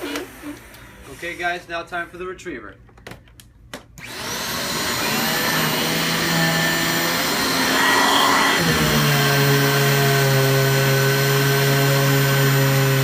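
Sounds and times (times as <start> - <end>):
vacuum cleaner motor whining: 4.0 - 13.0.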